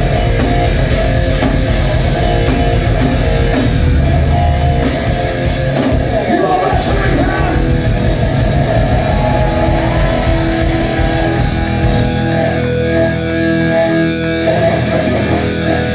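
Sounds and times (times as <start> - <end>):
live rock band playing: 0.0 - 15.9.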